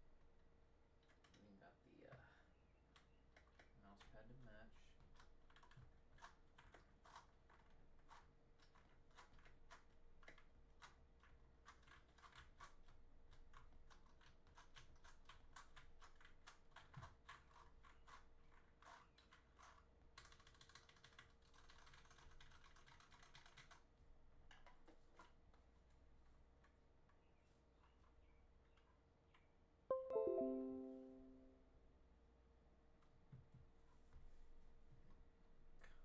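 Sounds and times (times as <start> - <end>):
mechanical keyboard clicking: 5.0 - 18.2, 18.8 - 23.8.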